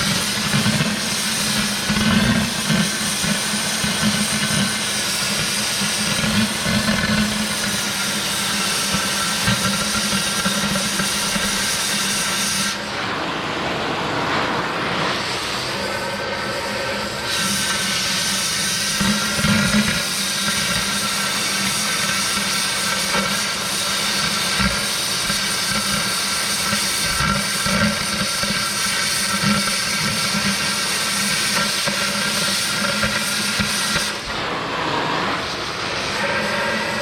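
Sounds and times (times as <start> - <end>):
machine hum: 0.0 - 19.9, 34.1 - 37.0
cutting torch hissing: 0.0 - 37.0.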